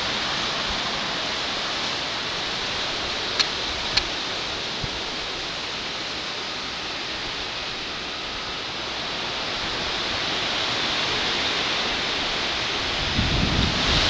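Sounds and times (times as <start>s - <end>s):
strong wind rushing: 11.2s - 14.0s.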